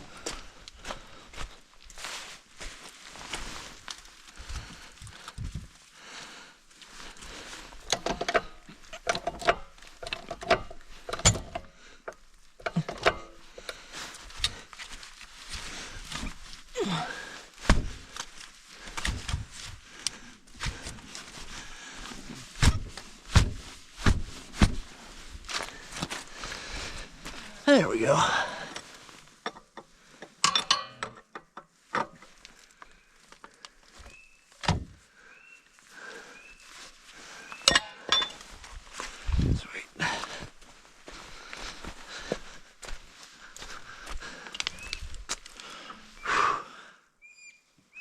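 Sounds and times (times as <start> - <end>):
knocks and clicks of tools: 7.8 - 13.4, 29.4 - 32.3, 37.6 - 38.5.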